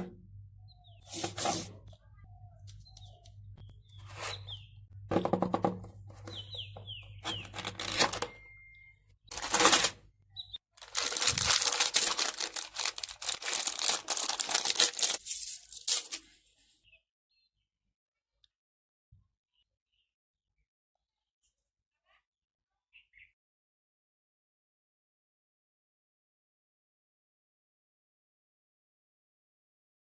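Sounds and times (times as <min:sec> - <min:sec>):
packaging rustling and crinkling: 0:07.2 - 0:08.3, 0:09.3 - 0:10.0, 0:10.8 - 0:16.2
packaging tearing: 0:07.2 - 0:08.3, 0:09.3 - 0:10.0, 0:10.8 - 0:16.2.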